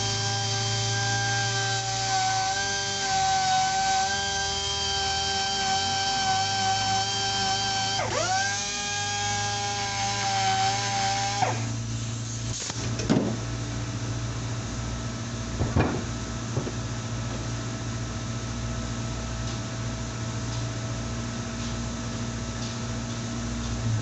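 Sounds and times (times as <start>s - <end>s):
machine motor humming: 23.7s - 24.0s.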